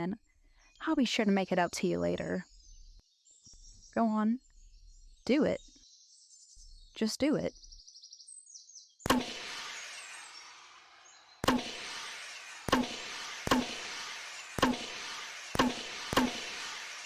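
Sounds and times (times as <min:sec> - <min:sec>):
flare launcher crack: 0:09.1 - 0:17.0
hissing flare trail: 0:09.1 - 0:17.0.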